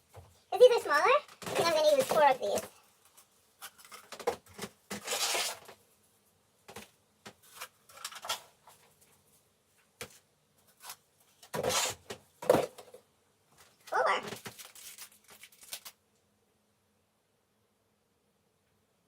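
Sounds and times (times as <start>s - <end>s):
rustling: 0.0s - 6.4s, 13.5s - 16.0s
seedling pots knocking and tapping: 1.2s - 2.7s.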